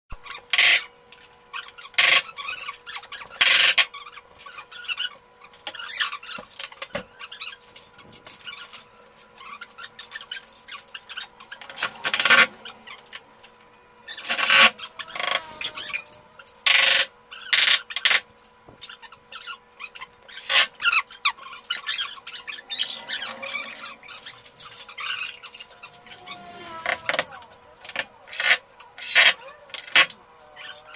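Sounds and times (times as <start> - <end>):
faint steady hum: 0.1 - 30.9
wood scraping and squeaking: 1.5 - 30.9.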